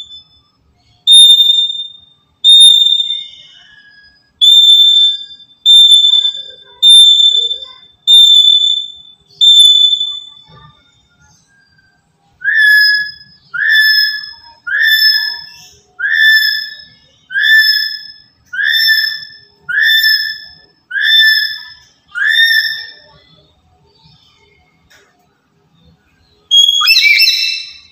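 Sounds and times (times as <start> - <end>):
parrot whistling calls: 1.1 - 10.7, 12.4 - 23.2, 26.5 - 27.9.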